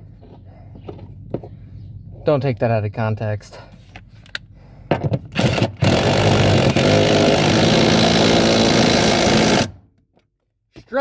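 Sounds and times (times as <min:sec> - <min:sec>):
handheld power tool running: 0:05.3 - 0:09.8.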